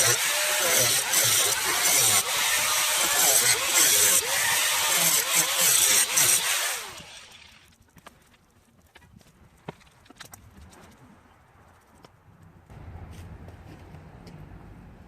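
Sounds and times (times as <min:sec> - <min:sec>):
power tool cutting sheet metal: 0:00.0 - 0:07.6.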